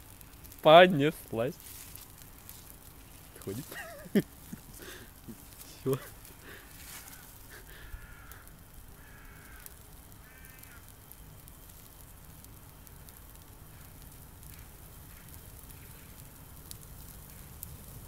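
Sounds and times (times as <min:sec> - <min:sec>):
fire crackling: 0:00.0 - 0:18.0
crow cawing: 0:06.4 - 0:10.9, 0:13.7 - 0:16.2.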